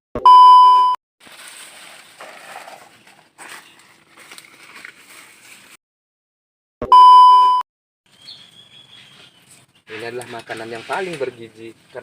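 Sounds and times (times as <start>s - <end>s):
loud electronic beep: 0.2s - 1.0s, 6.8s - 7.6s.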